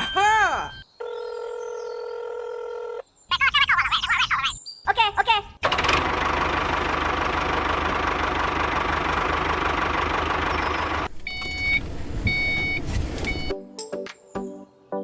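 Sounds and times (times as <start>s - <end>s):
short electronic beeps: 0.0s - 0.9s, 11.3s - 13.5s.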